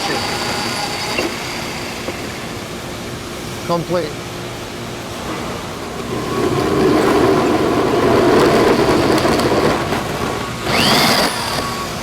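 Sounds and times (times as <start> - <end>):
power drill with hole saw: 0.0 - 2.6, 8.2 - 12.0.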